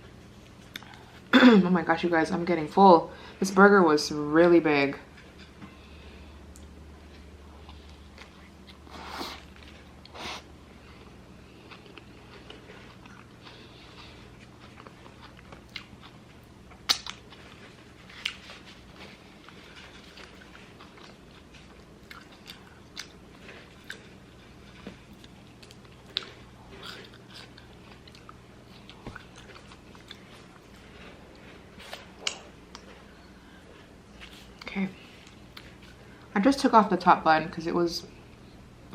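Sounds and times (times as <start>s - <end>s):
person biting and chewing food: 6.5s - 32.9s.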